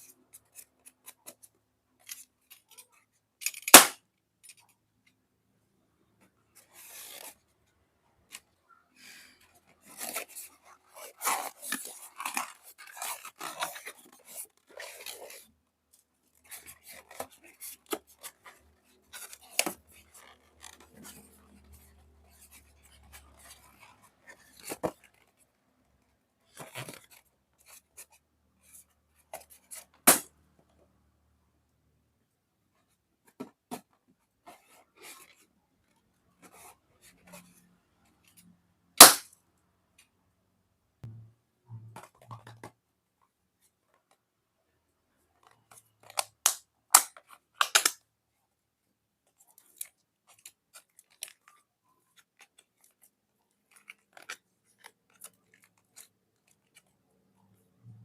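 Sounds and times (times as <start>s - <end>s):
balloons popping: 3.6s - 4.0s, 39.0s - 39.3s
crinkly handling noise: 6.1s - 30.0s, 49.2s - 58.0s.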